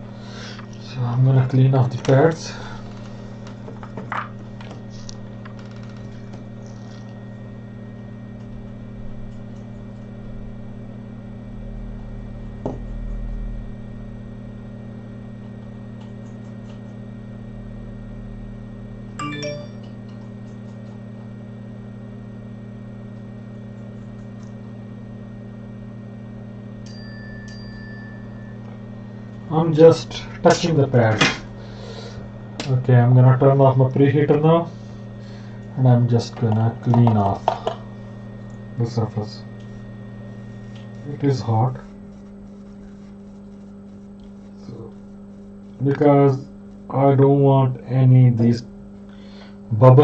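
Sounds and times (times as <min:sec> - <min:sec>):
electrical hum: 0:00.0 - 0:50.0
short high tone: 0:19.2 - 0:19.9.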